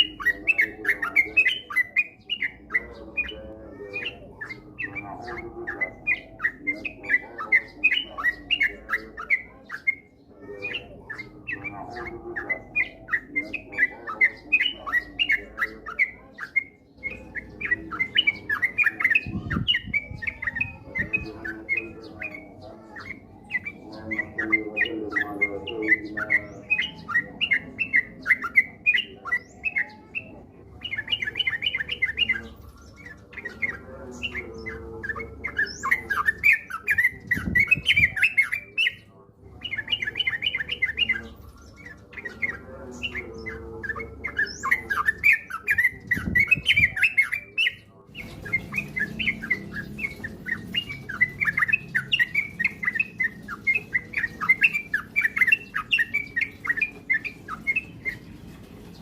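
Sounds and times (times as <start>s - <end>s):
bird singing bubbly chirps: 0.0s - 39.0s, 39.6s - 58.3s.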